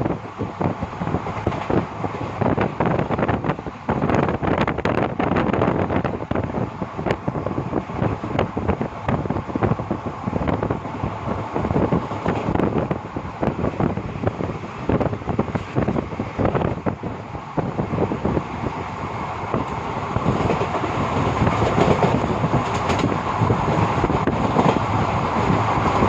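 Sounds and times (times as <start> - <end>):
train running noise: 0.0 - 26.0
train wheels clattering on track: 0.2 - 6.1, 10.5 - 16.7, 19.4 - 26.0.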